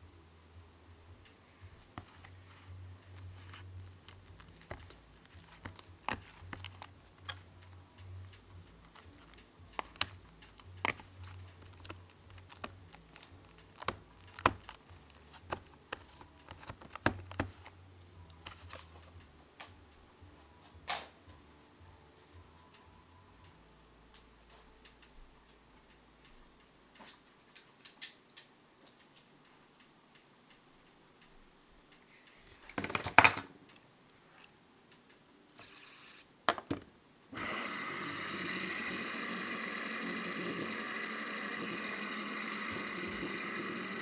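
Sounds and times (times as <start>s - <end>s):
faint low hum: 0.0s - 44.0s
toys clicking and tapping: 3.4s - 19.8s.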